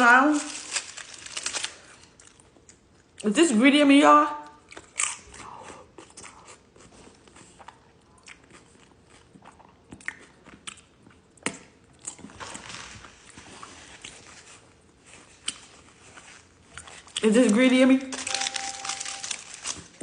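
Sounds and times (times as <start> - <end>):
person chewing food: 4.6 - 17.2
mouth clicks and crunches: 4.7 - 6.9.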